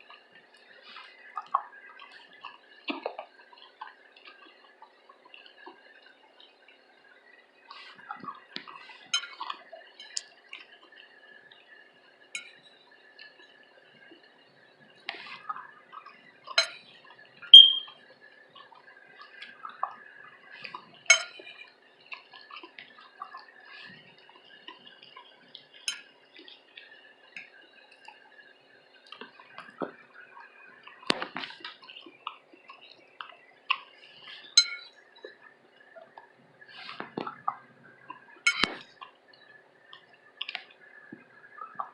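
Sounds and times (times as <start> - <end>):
wet chewing and mouth sounds: 1.0 - 4.5, 20.6 - 28.2, 30.8 - 39.2
cutlery clinking against a dish: 16.6 - 16.8, 21.1 - 21.4, 25.9 - 26.1, 34.6 - 34.9, 38.5 - 38.8.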